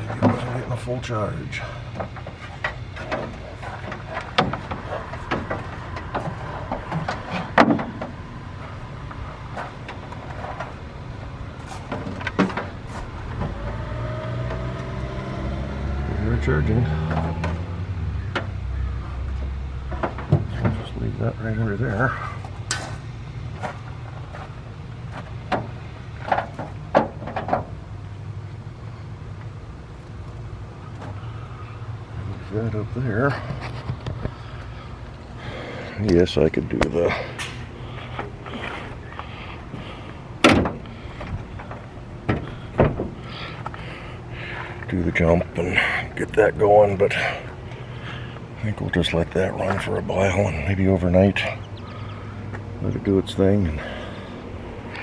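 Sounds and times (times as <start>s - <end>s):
steady low hum: 0.0s - 55.0s
charger clamps clicking and knocking: 1.9s - 15.0s, 19.2s - 21.0s, 22.4s - 27.9s, 36.0s - 43.8s.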